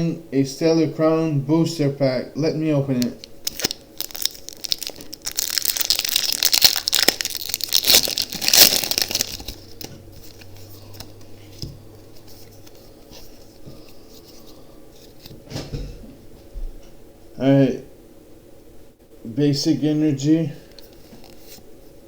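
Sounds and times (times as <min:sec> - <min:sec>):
foil wrapper tearing and crinkling: 0:03.0 - 0:11.1.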